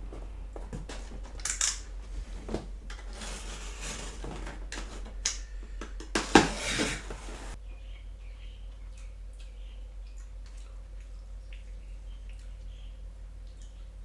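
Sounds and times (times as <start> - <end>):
cardboard packaging rustling: 0.0 - 7.6.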